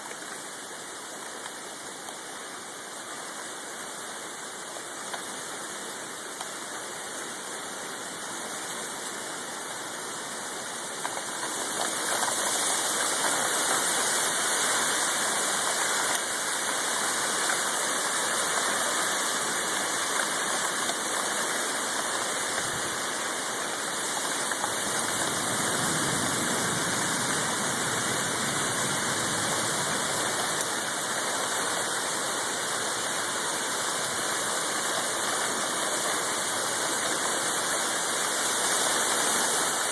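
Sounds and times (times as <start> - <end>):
strong wind blowing: 24.6 - 31.1.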